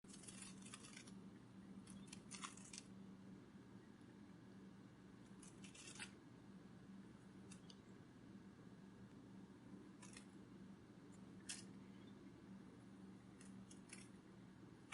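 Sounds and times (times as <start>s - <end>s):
low steady hum: 0.0s - 14.9s.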